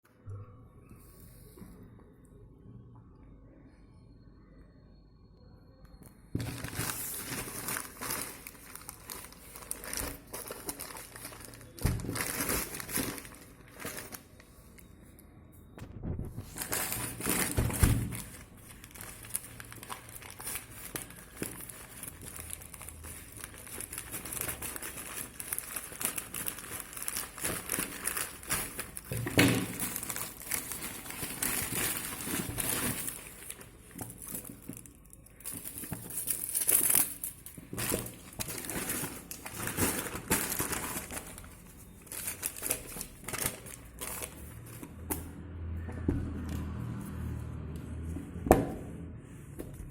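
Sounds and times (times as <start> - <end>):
packaging crinkling and rustling: 6.4 - 15.2, 16.1 - 45.3.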